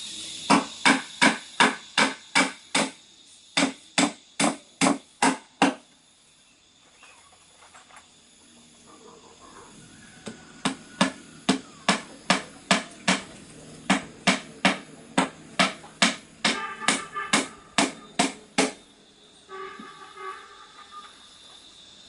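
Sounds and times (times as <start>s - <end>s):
tool knocking: 13.9s - 18.8s.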